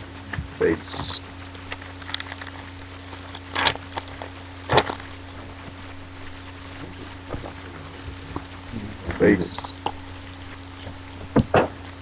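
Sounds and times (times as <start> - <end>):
cards rustling: 0.0 - 12.0
steady low hum: 0.0 - 12.0.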